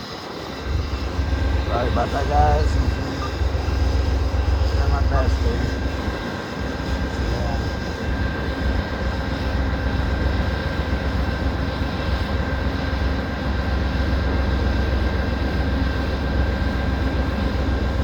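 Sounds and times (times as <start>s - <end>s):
constant high whine: 0.0s - 18.0s
diesel locomotive idling: 0.0s - 18.0s
wind rumble on microphone: 0.6s - 1.9s.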